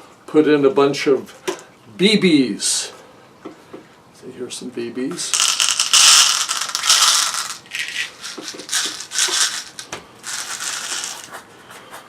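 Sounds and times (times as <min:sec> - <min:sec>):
bbs rattling into a balloon: 0:05.3 - 0:11.4.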